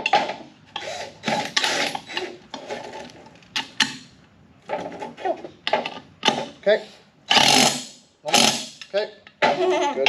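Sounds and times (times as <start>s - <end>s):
power tool driving bolts: 0.0s - 4.1s, 5.7s - 6.6s, 7.3s - 9.6s.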